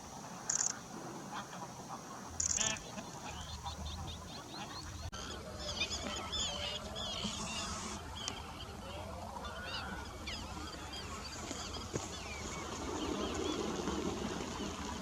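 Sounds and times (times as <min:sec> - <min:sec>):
geese honking: 0:00.0 - 0:05.1.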